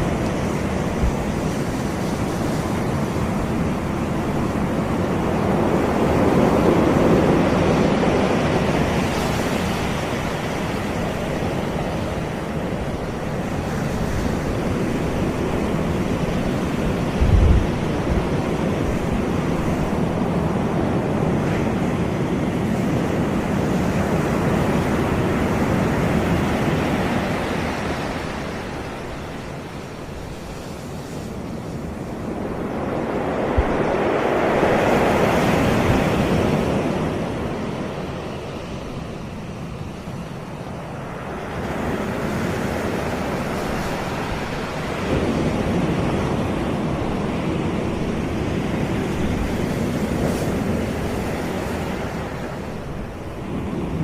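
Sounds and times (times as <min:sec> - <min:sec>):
waves breaking on a beach: 0:00.0 - 0:54.0
wind on microphone: 0:00.0 - 0:54.0.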